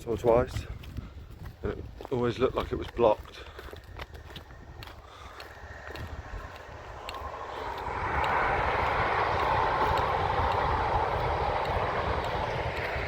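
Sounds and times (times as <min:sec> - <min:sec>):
wind rumble on microphone: 0:00.0 - 0:13.0
passing vehicle rushing: 0:05.0 - 0:13.0.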